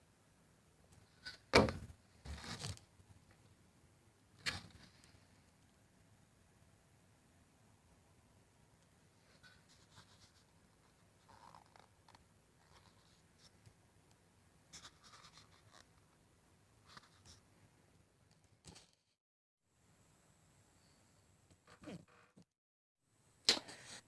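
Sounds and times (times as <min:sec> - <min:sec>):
faint scratching and rustling: 0:09.2 - 0:13.7, 0:14.7 - 0:16.2.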